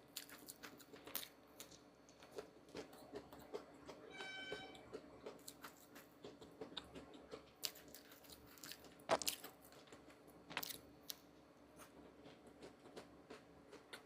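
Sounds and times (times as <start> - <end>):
crisp crunches and clicks: 4.7 - 11.2.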